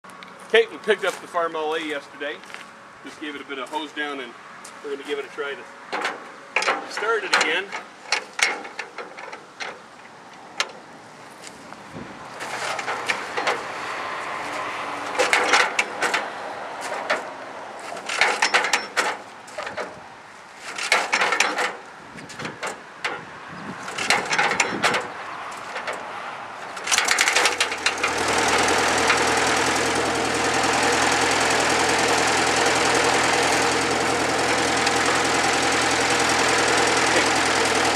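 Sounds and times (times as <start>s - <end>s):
tractor engine running: 0.0s - 37.9s
tractor engine hand-cranked: 5.0s - 10.8s, 12.4s - 13.9s, 14.5s - 20.0s, 20.6s - 37.9s.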